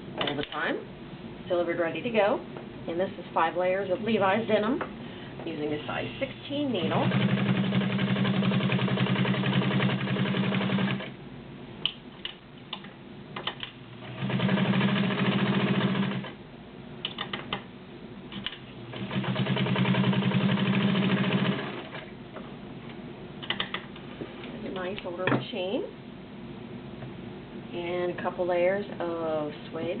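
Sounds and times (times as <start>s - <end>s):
sewing machine stitching: 6.8s - 11.1s, 14.0s - 16.3s, 18.4s - 22.1s.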